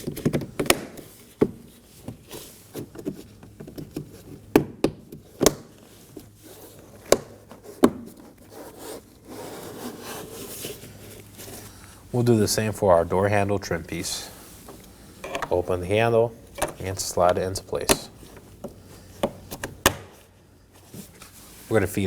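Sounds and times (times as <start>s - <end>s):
plastic rubbing on plastic: 5.8s - 11.8s.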